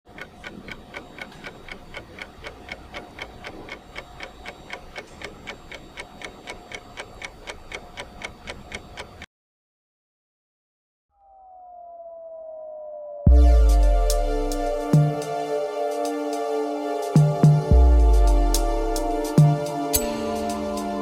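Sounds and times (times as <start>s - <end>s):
rapid clock-like ticking: 0.1s - 9.3s, 13.8s - 15.4s, 17.1s - 21.0s.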